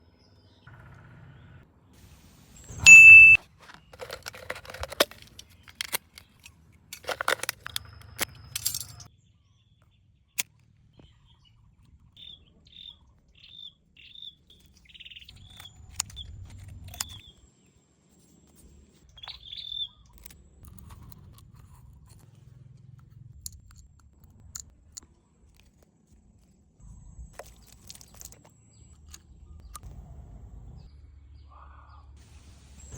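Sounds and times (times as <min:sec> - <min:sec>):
bird chirping: 0:02.6 - 0:06.4, 0:12.2 - 0:17.5, 0:19.1 - 0:20.3
loud ringing ding: 0:02.9 - 0:03.4.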